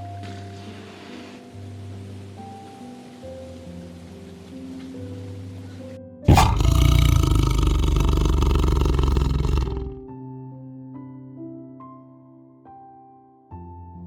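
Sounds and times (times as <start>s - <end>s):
soft background music: 0.0s - 6.3s, 10.0s - 14.0s
animal roaring: 6.3s - 10.0s.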